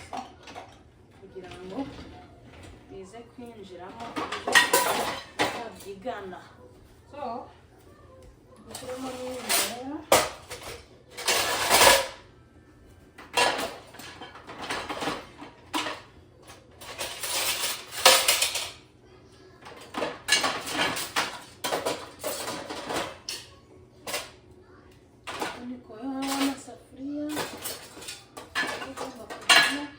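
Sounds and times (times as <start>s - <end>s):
crockery and cutlery clattering: 0.0s - 2.9s, 3.8s - 6.1s, 8.7s - 12.2s, 13.2s - 18.9s, 19.6s - 24.4s, 25.2s - 29.9s.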